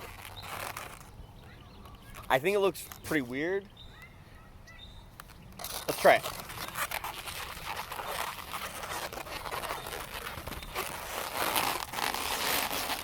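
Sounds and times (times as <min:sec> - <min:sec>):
balloons rubbing and creaking: 0:00.0 - 0:01.2, 0:01.8 - 0:03.1, 0:05.6 - 0:13.0.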